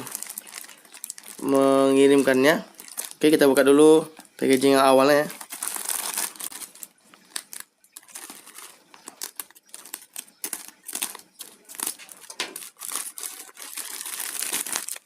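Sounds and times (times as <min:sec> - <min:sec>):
packaging tearing: 0:00.0 - 0:01.5, 0:05.3 - 0:15.0
packaging crinkling and rustling: 0:00.0 - 0:03.4, 0:04.1 - 0:15.0.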